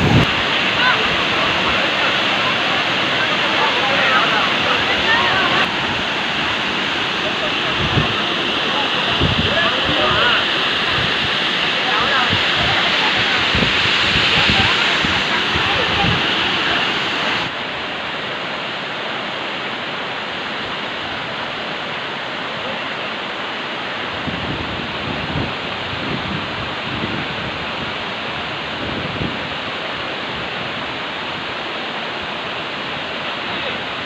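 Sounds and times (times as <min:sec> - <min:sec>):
wind buffeting microphone: 0:00.0 - 0:02.0, 0:04.6 - 0:17.5, 0:24.1 - 0:29.6
waterfall rushing: 0:00.0 - 0:34.0.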